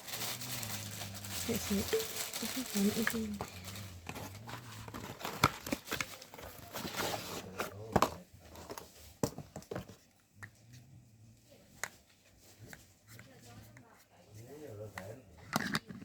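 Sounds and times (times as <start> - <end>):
packaging crinkling and tearing: 0.0 - 7.9.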